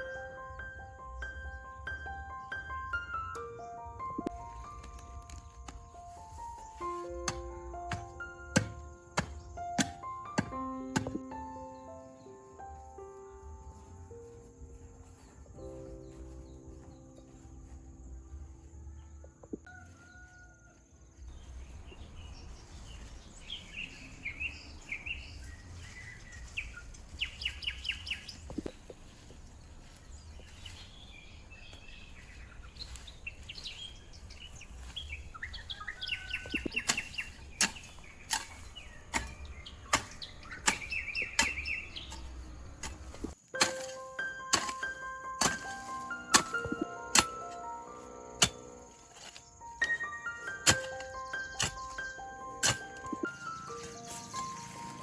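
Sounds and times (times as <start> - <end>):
birds chirping: 21.3 - 43.4, 44.8 - 55.0.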